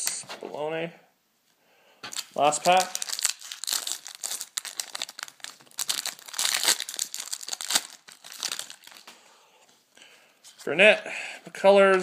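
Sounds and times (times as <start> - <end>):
foil wrapper tearing and crinkling: 2.1 - 9.1.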